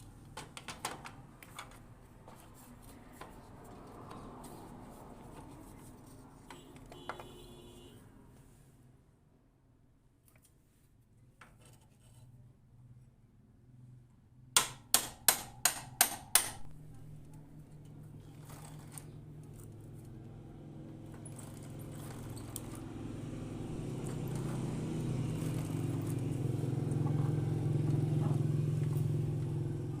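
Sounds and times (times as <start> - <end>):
motorcycle engine running: 19.4 - 30.0.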